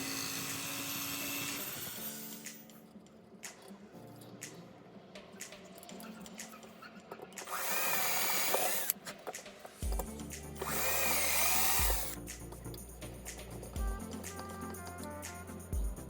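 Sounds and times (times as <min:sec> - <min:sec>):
power drill running: 0:00.0 - 0:02.6, 0:07.4 - 0:09.0, 0:10.6 - 0:12.2
background music: 0:00.2 - 0:16.0.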